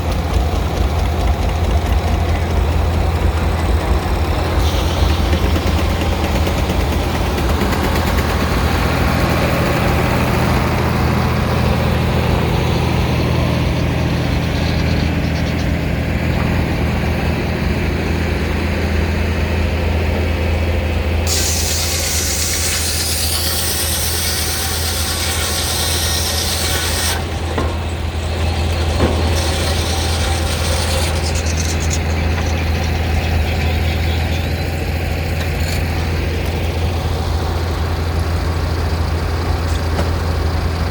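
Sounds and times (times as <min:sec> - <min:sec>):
steam engine driving a sawmill: 0:00.0 - 0:40.9
loud high hissing rush: 0:19.2 - 0:32.9.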